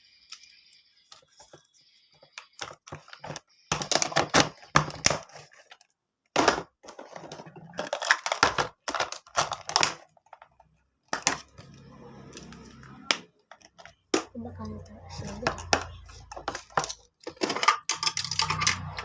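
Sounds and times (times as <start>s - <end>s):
items being set down: 6.4s - 11.7s
plastic packaging crinkling: 7.1s - 10.7s.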